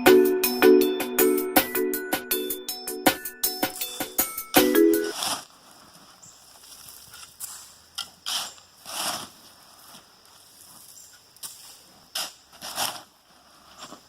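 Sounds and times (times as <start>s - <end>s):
shovel scraping gravel: 5.0s - 5.6s, 6.6s - 9.6s, 10.7s - 14.0s.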